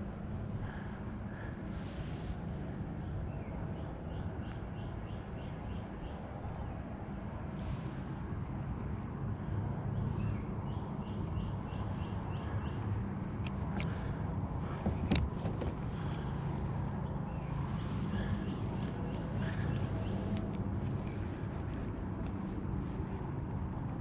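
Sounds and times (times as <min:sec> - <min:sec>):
bird chirping: 0:10.0 - 0:13.2, 0:17.0 - 0:21.2.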